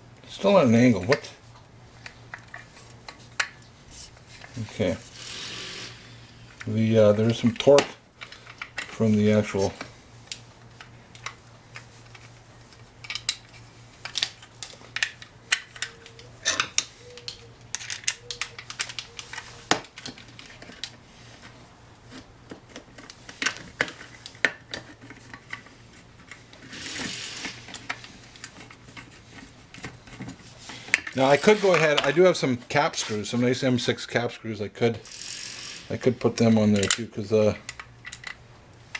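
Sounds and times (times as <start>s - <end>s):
hand tools clinking: 13.0s - 21.6s.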